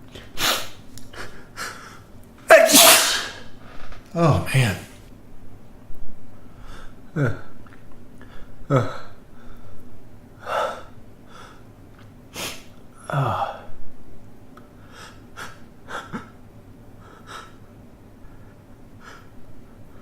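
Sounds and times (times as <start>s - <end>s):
sniffs: 0.2s - 1.8s, 12.3s - 12.7s
man gasping before sneezing: 2.5s - 3.4s.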